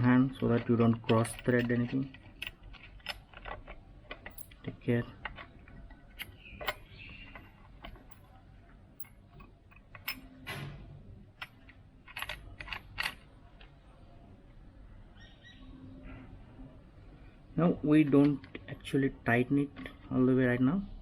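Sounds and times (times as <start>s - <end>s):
metal bolts and washers clinking: 0.0s - 10.8s, 11.4s - 13.7s.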